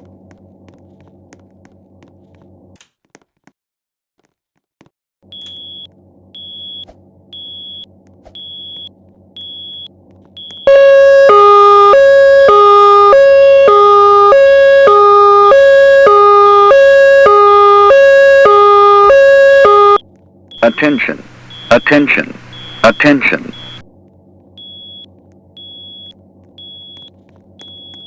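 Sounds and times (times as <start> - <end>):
two-tone alarm: 5.3 - 23.8, 24.6 - 28.0.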